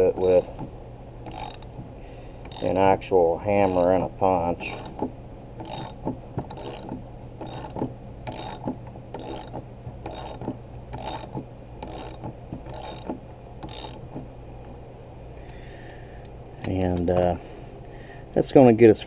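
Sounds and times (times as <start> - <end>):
ratchet clicking: 0.2 - 2.8, 3.6 - 3.9, 4.6 - 14.2.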